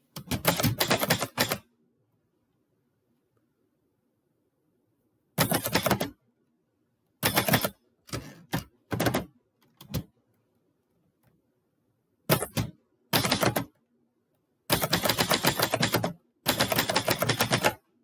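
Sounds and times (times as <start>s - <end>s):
typewriter keys striking: 0.2s - 1.6s, 14.8s - 17.8s.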